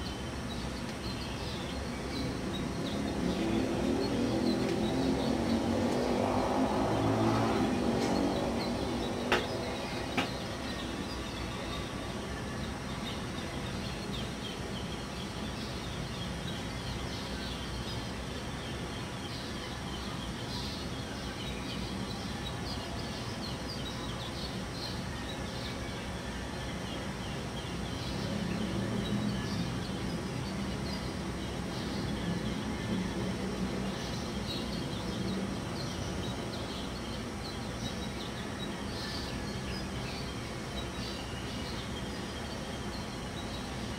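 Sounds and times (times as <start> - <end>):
birds chirping: 0.0 - 43.9
road traffic hum: 0.0 - 43.9
vehicle passing: 2.0 - 11.8.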